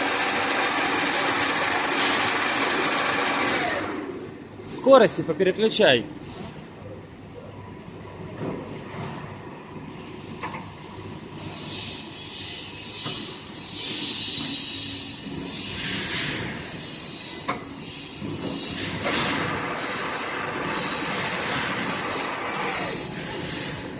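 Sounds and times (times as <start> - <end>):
lathe gears whining: 0.0 - 4.1, 18.6 - 23.9
brief high squeal: 0.8 - 1.2, 13.7 - 16.5.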